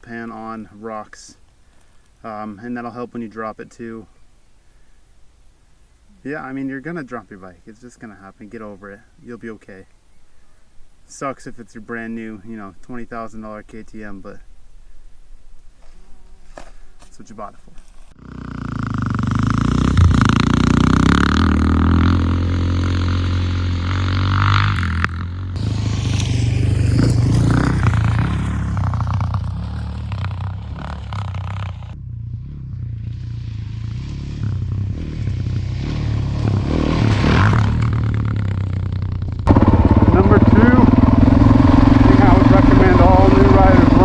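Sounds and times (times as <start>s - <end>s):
motorcycle engine revving: 18.1s - 44.0s.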